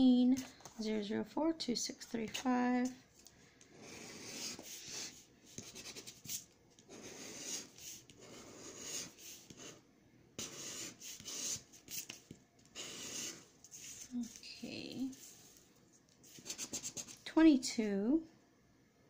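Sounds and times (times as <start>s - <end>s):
lottery ticket being scratched: 16.3s - 17.2s.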